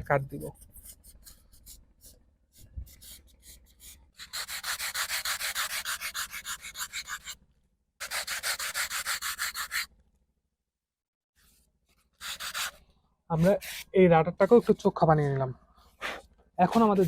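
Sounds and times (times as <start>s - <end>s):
sandpaper rubbing on foam: 0.4s - 7.4s, 8.0s - 9.9s, 12.2s - 12.8s, 13.4s - 14.9s.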